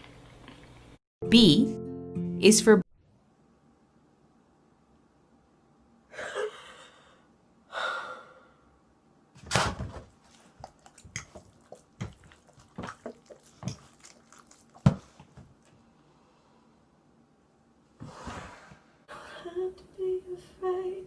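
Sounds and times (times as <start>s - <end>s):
wet chewing: 10.2s - 15.8s.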